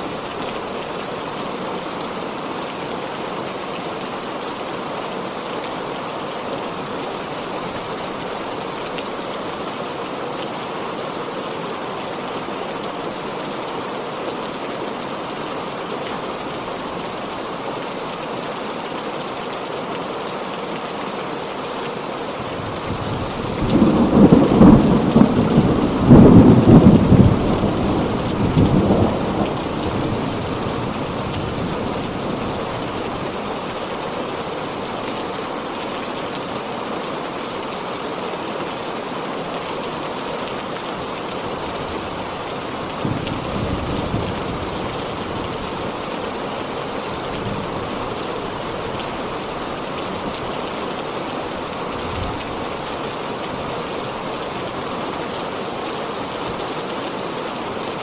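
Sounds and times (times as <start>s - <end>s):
heavy rain falling: 0.0s - 58.0s
thunder rumbling: 22.7s - 33.1s.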